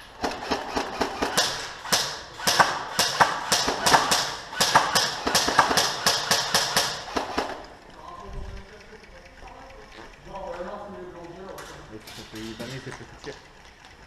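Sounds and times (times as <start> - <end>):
running footsteps on gritty ground: 12.4 - 14.0.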